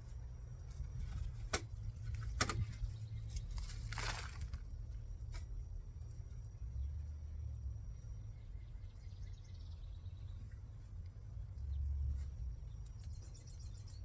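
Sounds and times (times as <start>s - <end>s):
rustling in soil: 0.0s - 6.5s
steady low rumble: 0.0s - 14.0s.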